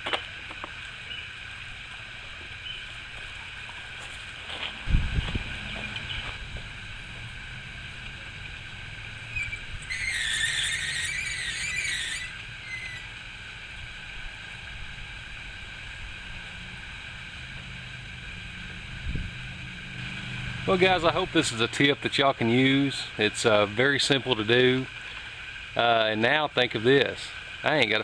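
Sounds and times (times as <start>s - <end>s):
pulley squealing: 6.8s - 14.6s.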